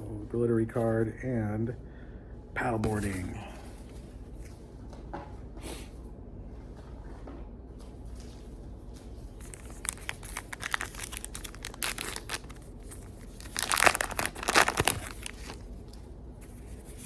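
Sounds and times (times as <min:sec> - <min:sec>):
wrapper crinkling: 0:09.3 - 0:16.6
wrapper tearing: 0:09.4 - 0:15.7.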